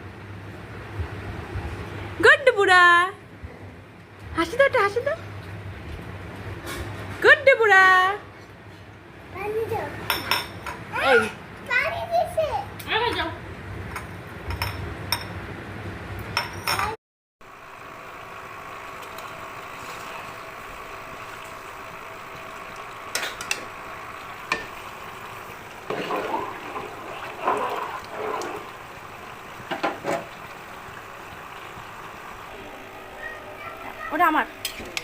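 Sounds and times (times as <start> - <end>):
food sizzling in a pan: 17.5 - 35.0.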